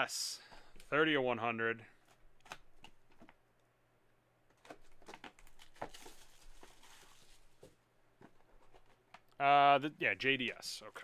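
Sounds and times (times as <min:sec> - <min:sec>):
soft papery rustle: 0:04.6 - 0:09.2, 0:10.3 - 0:11.0.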